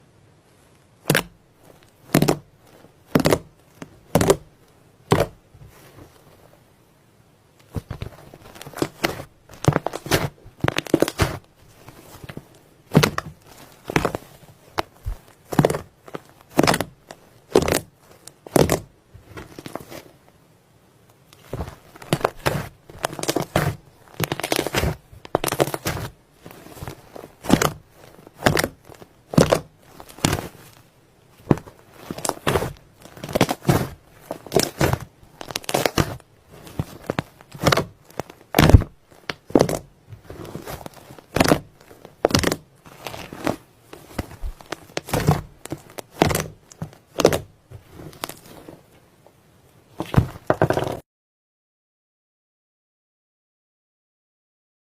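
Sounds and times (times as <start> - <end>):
slime squelching: 1.1 - 6.5, 7.6 - 20.2, 21.2 - 48.9, 49.9 - 51.0.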